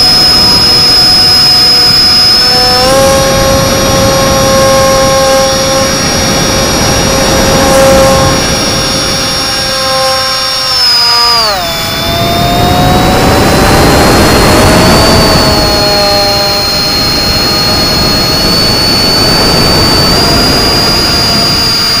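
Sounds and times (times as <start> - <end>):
electric motor and propeller whining: 0.0 - 22.0
wind noise: 0.0 - 22.0.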